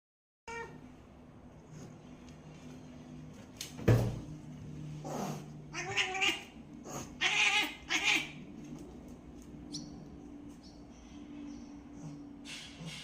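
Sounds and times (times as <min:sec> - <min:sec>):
cat chattering: 0:05.7 - 0:08.4.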